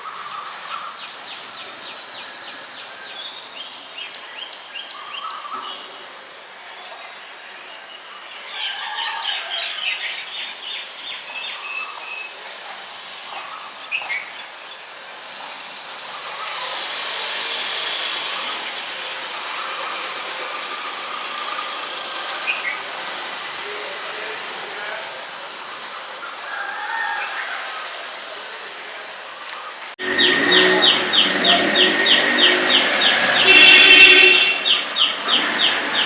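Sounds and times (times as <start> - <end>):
small birds chirping: 29.5 - 36.0
passing vehicle rushing: 30.0 - 36.0.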